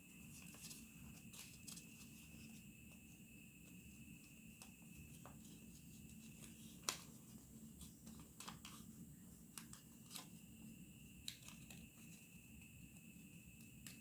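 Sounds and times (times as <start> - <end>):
paper crinkling: 0.2 - 2.6, 5.0 - 10.4.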